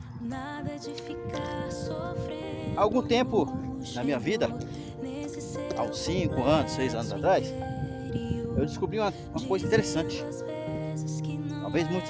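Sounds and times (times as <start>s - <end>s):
soft background music: 0.0s - 12.0s.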